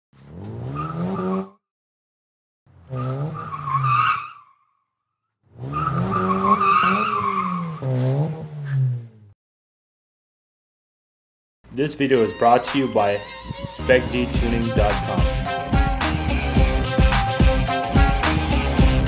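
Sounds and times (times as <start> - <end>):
car engine revving: 0.2 - 1.5, 2.7 - 4.1, 5.5 - 9.3, 13.6 - 19.0
tyres squealing: 5.6 - 8.2.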